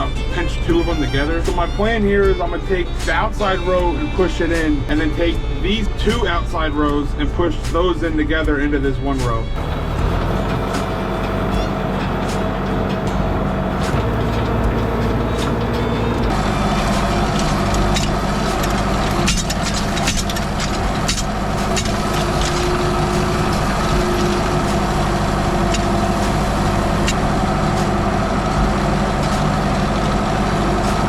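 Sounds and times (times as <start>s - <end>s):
tractor engine running: 0.0s - 8.6s, 9.2s - 31.0s
clicks and rattles: 10.1s - 31.0s.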